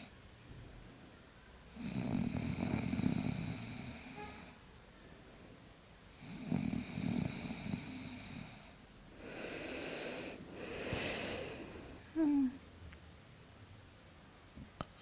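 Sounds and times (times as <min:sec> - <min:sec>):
person snoring: 0:01.7 - 0:04.2, 0:06.2 - 0:12.6
breathy rush of air: 0:09.1 - 0:12.6.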